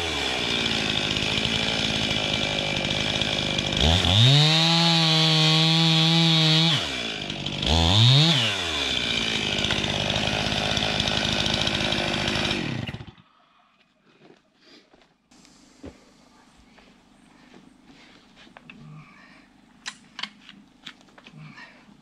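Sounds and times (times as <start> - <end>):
chainsaw revving and idling: 0.0 - 13.3.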